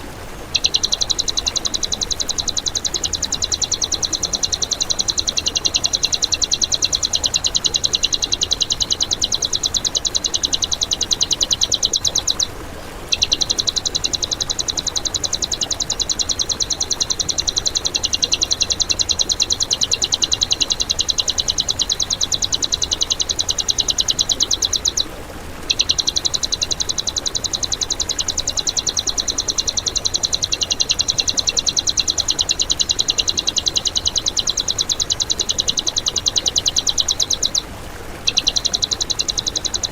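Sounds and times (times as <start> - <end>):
songbird rattling high chirps: 0.0 - 39.9.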